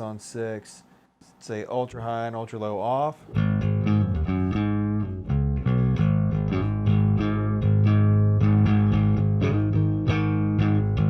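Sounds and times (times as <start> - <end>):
electric bass picked notes: 3.3 - 11.0.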